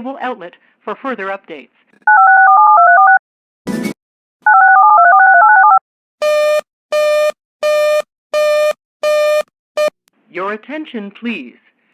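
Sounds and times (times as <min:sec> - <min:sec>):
touch-tone dialing beeps: 0:02.1 - 0:03.2, 0:04.5 - 0:10.0
busy signal beeps: 0:04.6 - 0:09.9.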